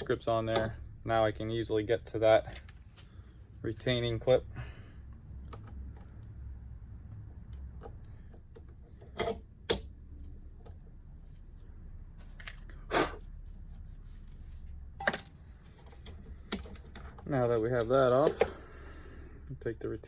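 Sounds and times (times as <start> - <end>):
low steady hum: 0.0 - 20.0
metal tools clinking: 9.1 - 9.8, 15.0 - 18.7.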